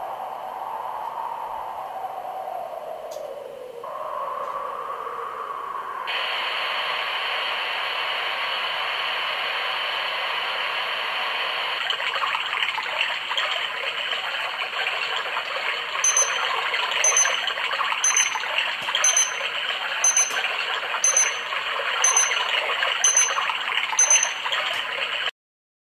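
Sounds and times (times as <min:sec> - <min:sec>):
short high alarm beeps: 0:16.0 - 0:24.6.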